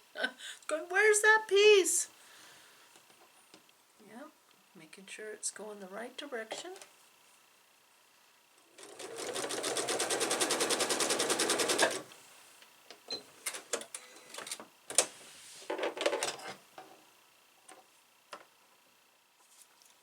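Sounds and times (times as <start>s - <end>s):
sewing machine stitching: 8.6s - 12.1s.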